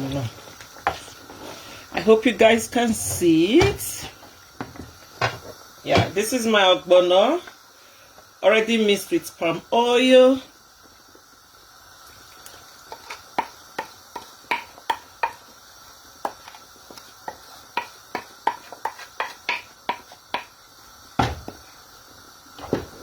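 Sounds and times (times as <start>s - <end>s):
spoon scraping cooking pot: 0.8s - 1.6s.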